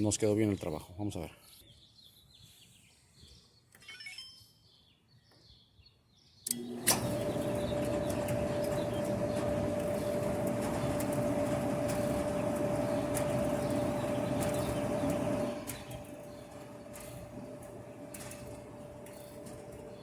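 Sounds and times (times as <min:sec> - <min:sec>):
dryer drum humming: 0:06.5 - 0:20.0.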